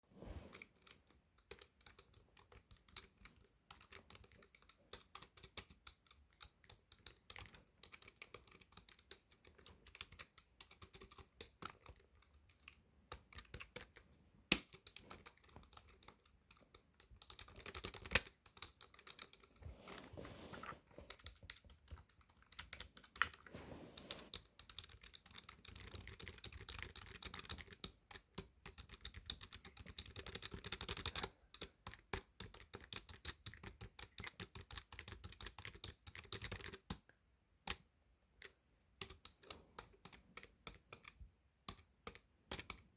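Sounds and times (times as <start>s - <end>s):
typing on computer keyboard: 0.8s - 14.0s, 14.7s - 19.5s, 24.3s - 37.0s.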